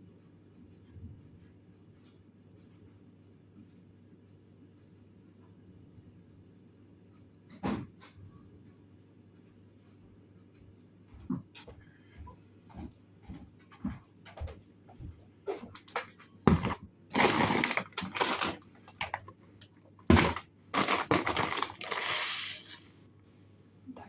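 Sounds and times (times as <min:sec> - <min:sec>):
packaging crinkling and rustling: 0:15.9 - 0:19.3, 0:20.1 - 0:22.9.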